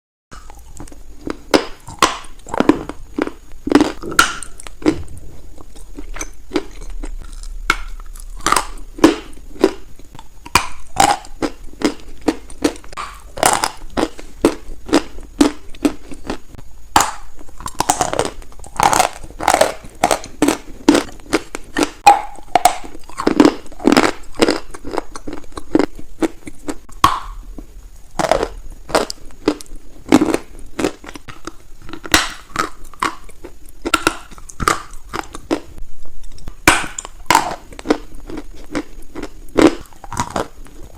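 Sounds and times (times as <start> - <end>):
crunchy clay being chewed: 0.4 - 40.9.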